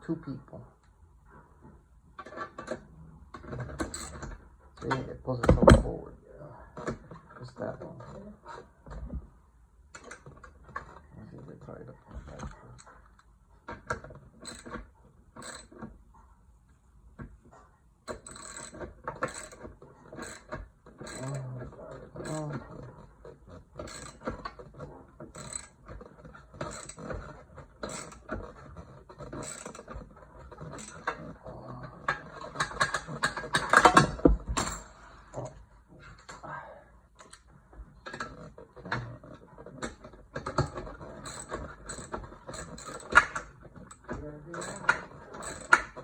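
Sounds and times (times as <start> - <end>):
metal tools clicking and clattering: 2.2 - 5.9, 18.1 - 23.1, 23.8 - 35.0, 37.2 - 46.0
metal parts rattling: 2.2 - 6.0, 18.1 - 35.0, 37.2 - 46.0.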